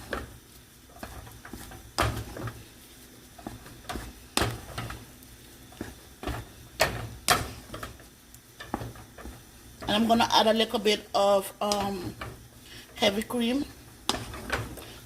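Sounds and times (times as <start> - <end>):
spoon stirring mashed potatoes: 0.0 - 15.0.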